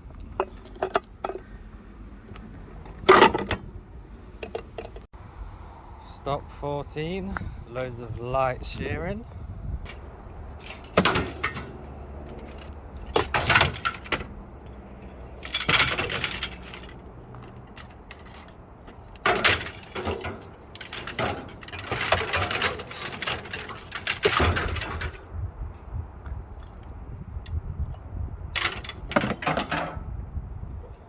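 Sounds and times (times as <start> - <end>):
scrap steel clanking: 0.0 - 5.1, 9.9 - 25.3, 28.6 - 30.0.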